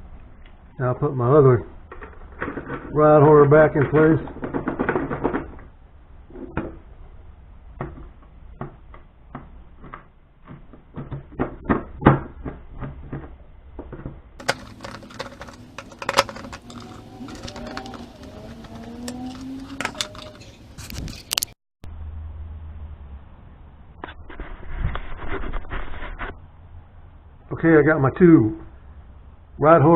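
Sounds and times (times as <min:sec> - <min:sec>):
plastic and metal parts clicking: 0:07.8 - 0:21.5.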